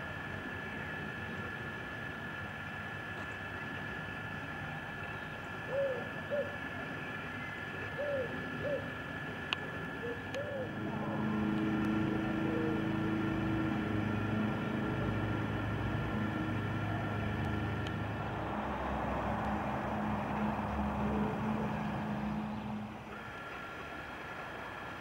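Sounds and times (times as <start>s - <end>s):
engine drone: 0.0s - 25.0s
bird hooting: 4.6s - 23.4s.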